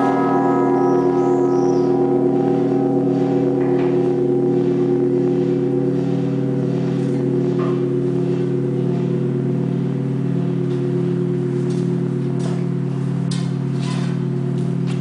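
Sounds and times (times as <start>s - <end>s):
deep church bells humming: 0.0s - 15.0s.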